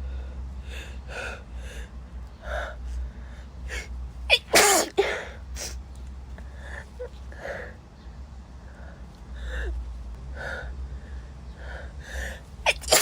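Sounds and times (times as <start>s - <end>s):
woman sneezing: 4.3s - 5.1s, 12.7s - 13.0s.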